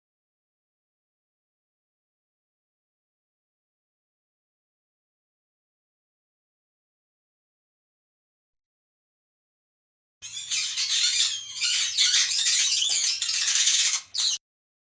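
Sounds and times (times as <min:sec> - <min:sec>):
mouse squeaking: 0:10.2 - 0:14.4.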